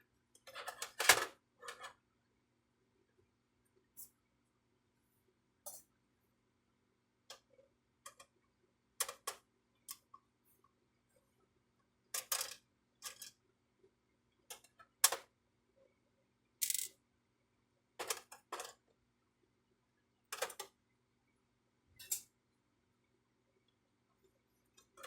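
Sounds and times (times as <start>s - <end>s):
plastic parts clicking and clattering: 0.4s - 2.0s, 9.0s - 10.1s, 12.2s - 13.4s, 14.5s - 15.3s, 16.6s - 17.0s, 18.0s - 18.8s, 20.3s - 20.7s.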